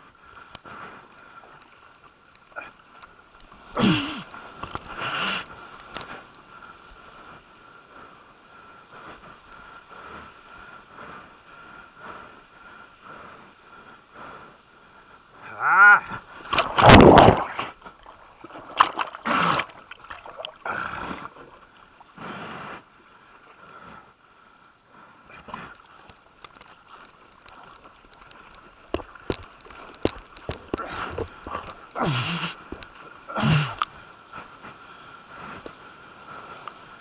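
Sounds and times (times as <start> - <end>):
man grunting: 15.5 - 16.1
water splashing: 16.4 - 22.1, 25.3 - 34.0
breathy huffs: 30.7 - 33.9.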